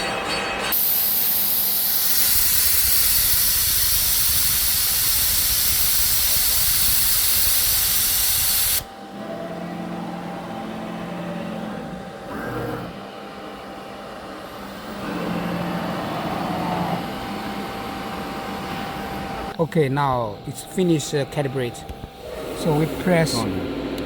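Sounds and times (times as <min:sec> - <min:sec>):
compressed air hiss: 0:00.8 - 0:08.9
router motors humming: 0:01.0 - 0:24.0.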